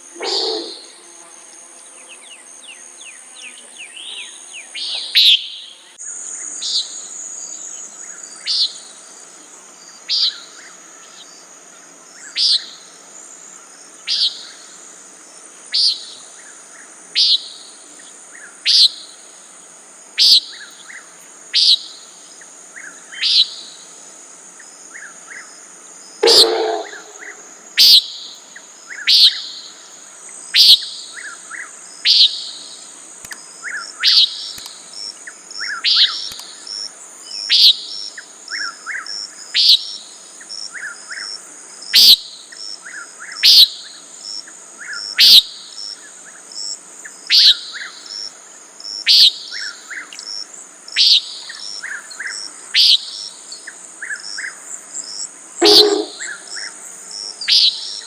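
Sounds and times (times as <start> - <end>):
high insect drone: 0.0 - 58.0
nighthawk nasal peent call: 0.1 - 0.9, 26.2 - 28.1, 55.6 - 56.5.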